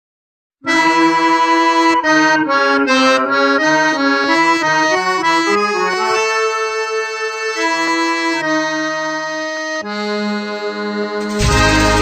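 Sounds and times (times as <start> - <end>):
accordion melody: 0.6 - 12.0
bass line: 10.2 - 12.0.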